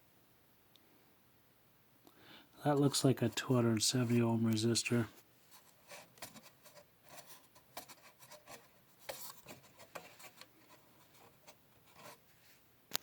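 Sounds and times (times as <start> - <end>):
soft rubbing of wires: 2.8 - 12.6.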